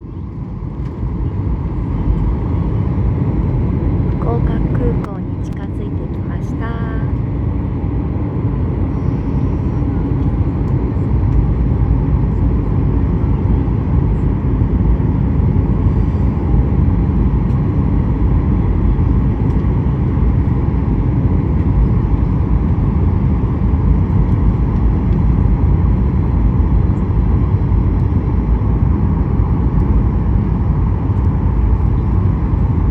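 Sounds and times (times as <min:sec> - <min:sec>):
airliner cabin rumble: 0:00.0 - 0:32.9.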